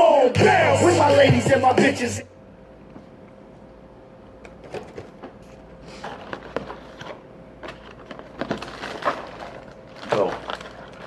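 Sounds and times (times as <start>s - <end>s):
faint steady hum: 0.0s - 11.0s
objects being handled: 4.6s - 11.0s.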